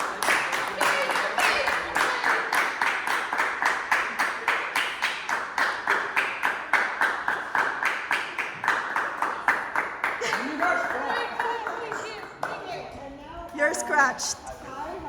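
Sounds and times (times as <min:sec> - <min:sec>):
hands clapping: 0:00.0 - 0:12.7.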